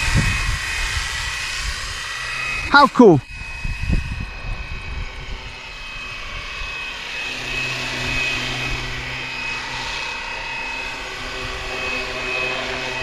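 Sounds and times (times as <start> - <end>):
electric motor whine: 0.0 - 13.0.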